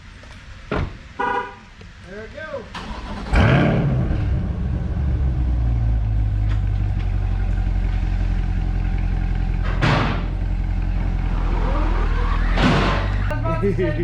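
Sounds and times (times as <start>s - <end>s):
car engine running at low revs: 3.2s - 14.0s.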